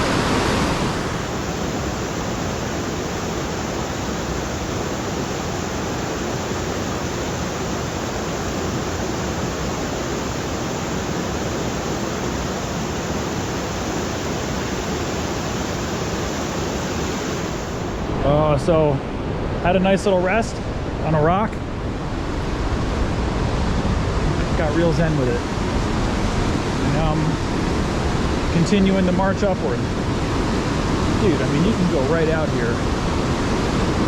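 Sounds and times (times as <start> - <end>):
river water rushing over rocks: 0.0 - 18.2.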